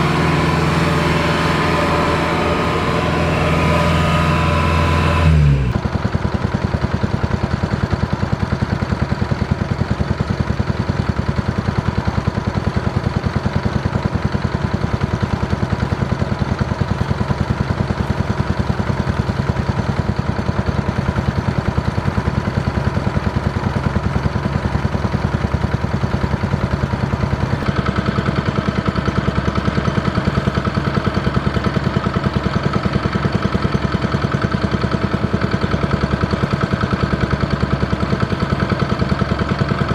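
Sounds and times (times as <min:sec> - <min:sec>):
higher hum: 0:00.0 - 0:05.8
combine harvester engine running: 0:00.0 - 0:39.9.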